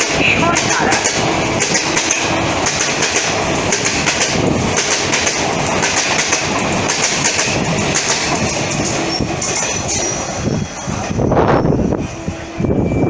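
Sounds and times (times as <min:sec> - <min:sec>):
train wheels clattering: 0:00.0 - 0:11.3.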